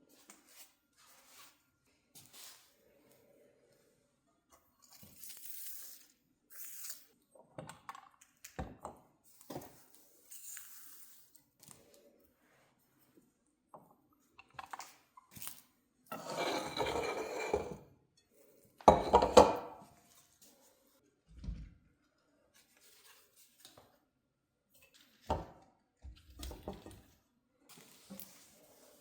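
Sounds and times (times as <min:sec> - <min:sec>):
dishes and utensils clinking: 0:16.1 - 0:17.8, 0:18.9 - 0:19.9.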